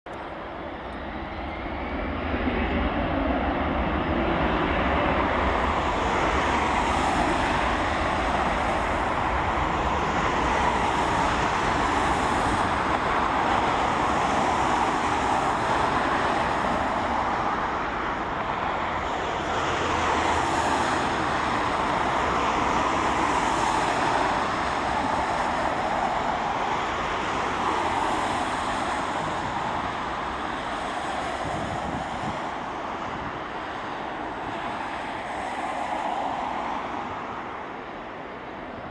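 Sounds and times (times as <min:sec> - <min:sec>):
jet engines at low thrust: 0:00.1 - 0:38.9.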